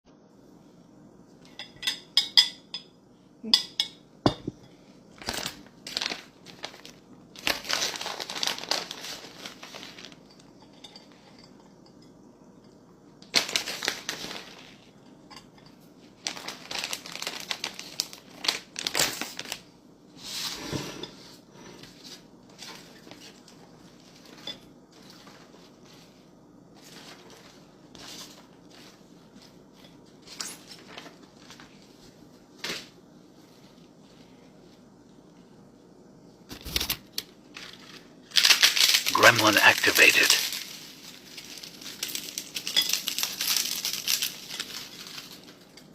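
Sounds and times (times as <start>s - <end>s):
dishes clinking: 1.4s - 2.9s, 3.5s - 4.7s
packaging crinkling: 5.2s - 10.2s, 13.3s - 14.8s, 16.2s - 19.6s, 36.6s - 45.9s.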